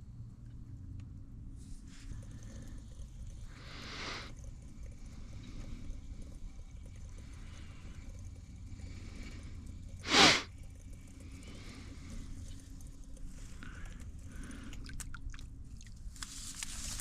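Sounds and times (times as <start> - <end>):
low steady rumble: 0.0 - 17.0.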